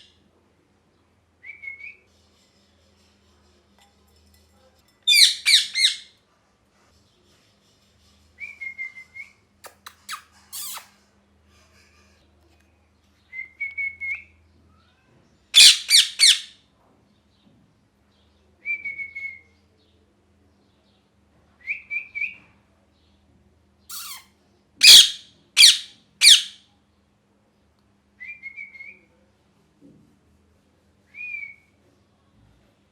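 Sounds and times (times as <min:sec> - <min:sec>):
parrot chirping: 0:05.0 - 0:06.1, 0:09.6 - 0:10.9, 0:15.5 - 0:16.6, 0:23.9 - 0:26.6
parrot screeching: 0:05.1 - 0:06.1, 0:15.6 - 0:16.5, 0:23.9 - 0:26.6.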